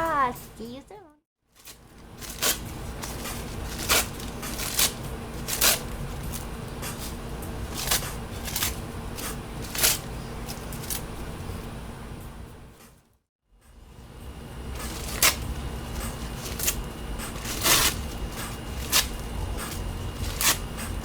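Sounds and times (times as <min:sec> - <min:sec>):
paper tearing and crinkling: 0:01.6 - 0:11.1, 0:14.8 - 0:21.0.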